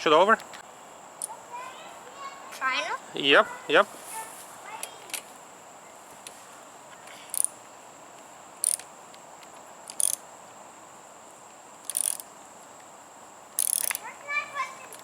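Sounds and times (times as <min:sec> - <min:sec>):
high insect tone: 0:00.0 - 0:15.0
ratchet wrench clicking: 0:07.3 - 0:07.6, 0:08.6 - 0:08.9, 0:09.8 - 0:10.2, 0:11.8 - 0:12.3, 0:13.6 - 0:14.0.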